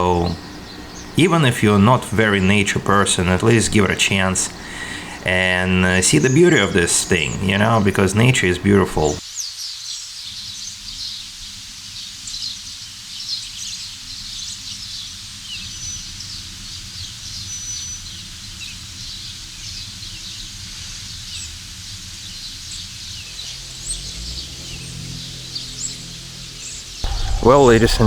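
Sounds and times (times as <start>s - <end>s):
low background noise: 0.0s - 9.2s, 23.0s - 28.0s
small birds chirping: 0.0s - 28.0s
high steady whistle: 23.2s - 28.0s.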